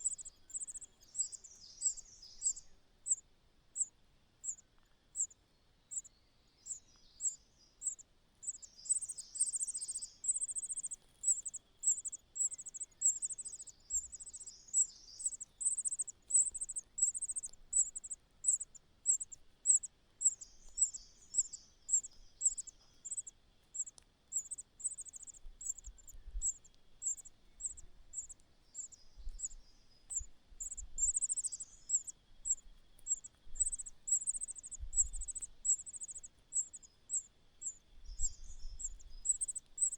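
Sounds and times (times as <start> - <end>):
nestlings cheeping: 0.0 - 3.2, 6.7 - 39.9
soft twittering: 0.0 - 39.9.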